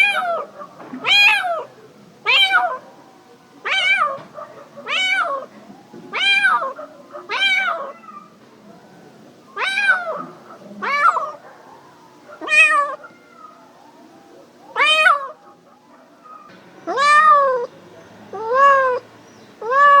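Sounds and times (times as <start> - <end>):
cat meowing: 0.0 - 1.7, 2.3 - 2.8, 3.6 - 5.5, 6.1 - 8.4, 9.6 - 11.4, 12.4 - 13.8, 14.7 - 15.4, 16.2 - 17.7, 18.3 - 19.0, 19.6 - 20.0.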